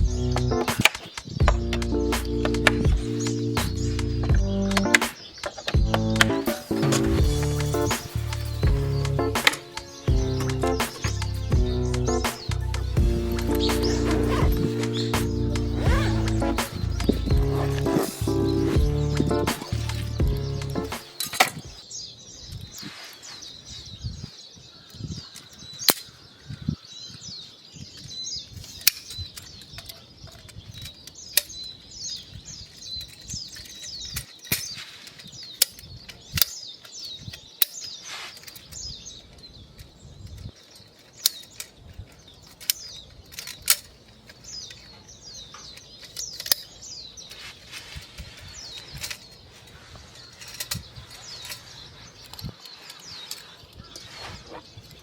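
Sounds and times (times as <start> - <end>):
sharp clicks and knocks: 0.0 - 21.8
small birds chirping: 0.0 - 55.0.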